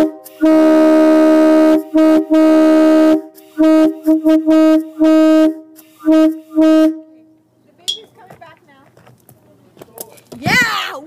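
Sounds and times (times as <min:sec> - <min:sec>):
train air horn blasts: 0:00.0 - 0:07.3.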